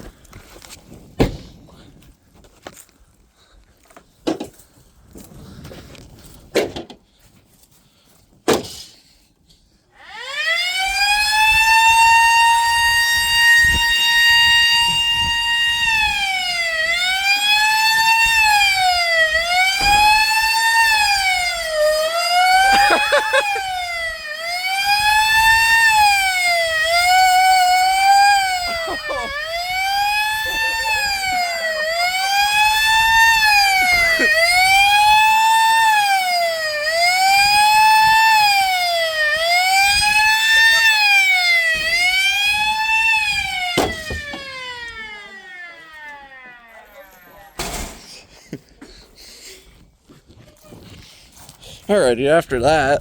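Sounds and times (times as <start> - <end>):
siren winding and wailing: 10.0 - 47.5.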